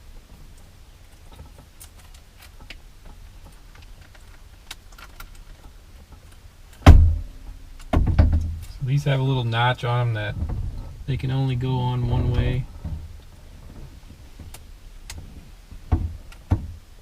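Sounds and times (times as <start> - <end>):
sharp loud knock: 6.8 - 7.3.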